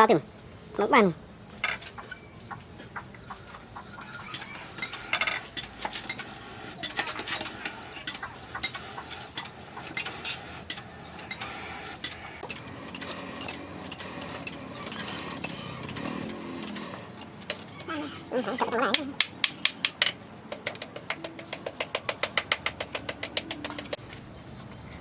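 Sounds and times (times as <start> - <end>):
metal clinking against metal: 12.0 - 17.9.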